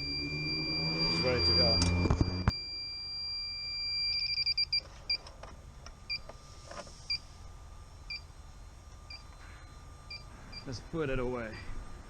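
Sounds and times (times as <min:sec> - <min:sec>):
gas leak detector beeping: 0:00.0 - 0:05.3, 0:08.1 - 0:08.3, 0:09.1 - 0:09.4, 0:10.1 - 0:10.8.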